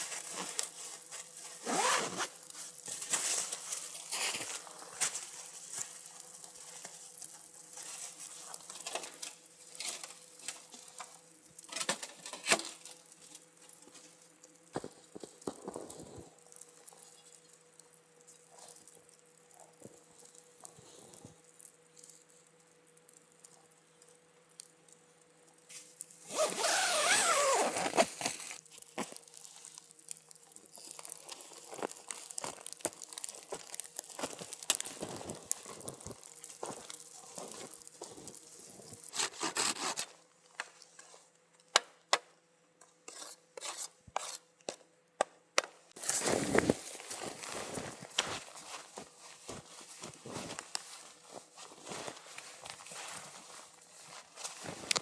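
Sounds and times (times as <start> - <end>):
scraping and rubbing: 26.3 - 28.6, 39.1 - 40.1.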